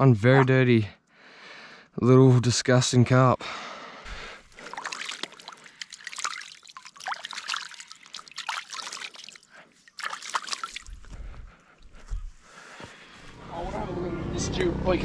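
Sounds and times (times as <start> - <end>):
water trickling and splashing: 4.1 - 12.5.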